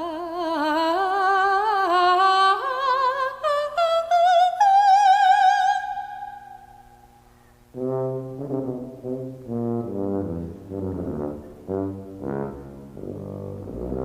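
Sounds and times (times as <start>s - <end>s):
woman singing soprano with vibrato: 0.0s - 7.1s.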